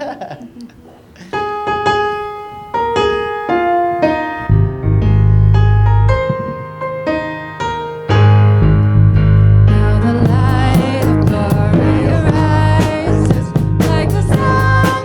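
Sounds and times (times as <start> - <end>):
electric piano chords: 1.3 - 15.0
deep bass notes: 4.5 - 6.7, 8.3 - 15.0.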